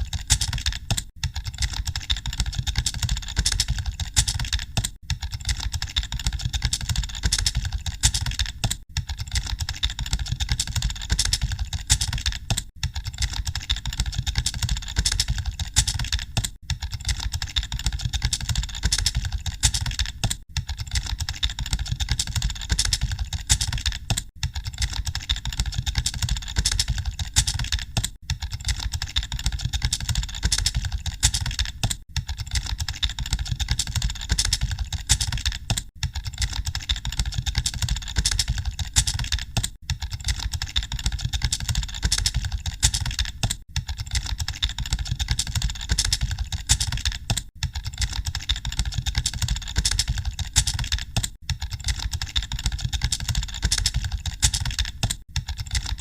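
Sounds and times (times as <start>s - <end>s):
fast typing on keyboards: 0.0s - 56.0s.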